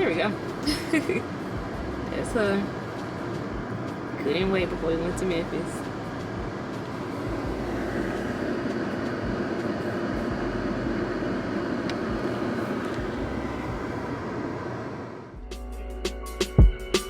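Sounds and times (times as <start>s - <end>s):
mechanical rumble with low hum: 0.0s - 16.0s.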